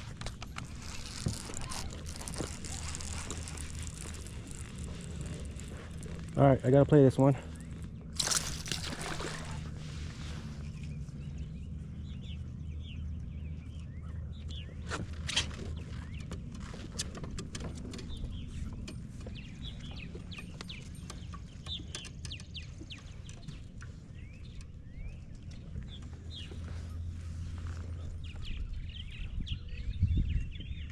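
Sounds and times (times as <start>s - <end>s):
steady low rumble: 0.0s - 14.9s, 17.8s - 30.9s
small birds chirping: 0.0s - 30.9s.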